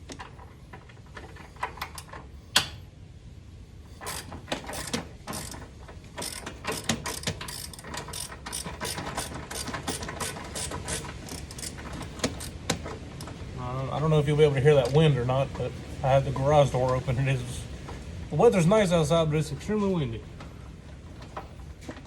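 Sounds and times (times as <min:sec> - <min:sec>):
socket ratchet clicking: 0:06.2 - 0:12.6.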